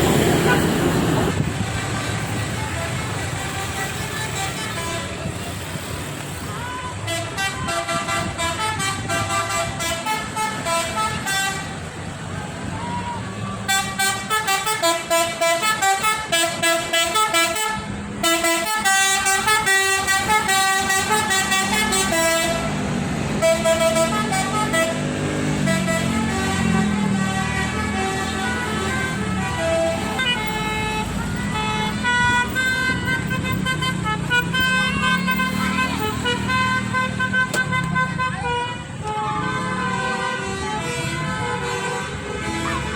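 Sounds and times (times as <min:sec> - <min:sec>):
engine rumble: 0:00.0 - 0:14.4
multi-tone musical horn: 0:07.1 - 0:11.8, 0:13.7 - 0:42.9.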